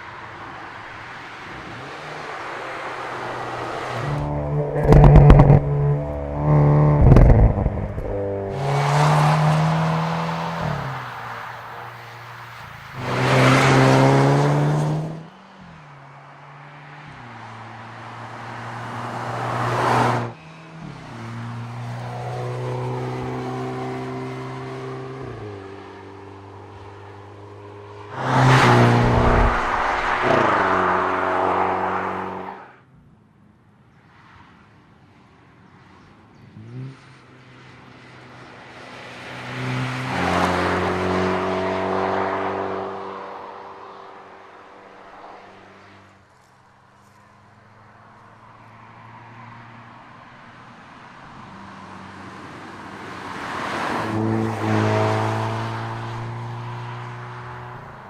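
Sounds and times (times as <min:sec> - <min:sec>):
car engine accelerating hard: 0:03.1 - 0:10.9, 0:28.1 - 0:32.5.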